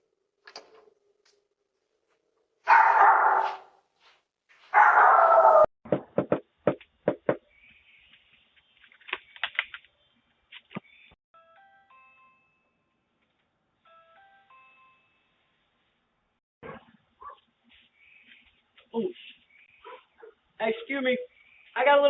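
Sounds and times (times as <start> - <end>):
dog barking: 2.7 - 3.7, 4.7 - 5.7, 16.6 - 17.5, 19.8 - 20.9.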